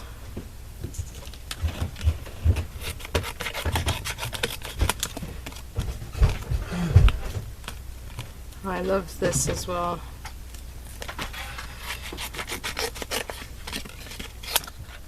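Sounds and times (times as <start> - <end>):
scissors snipping paper: 2.8 - 5.6, 11.0 - 15.0
paper rustling: 10.9 - 15.0.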